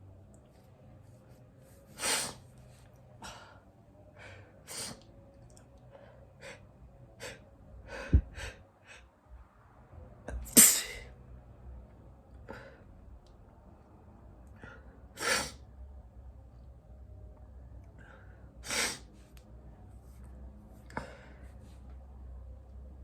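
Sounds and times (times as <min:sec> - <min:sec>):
man sneezing: 0:10.4 - 0:11.1.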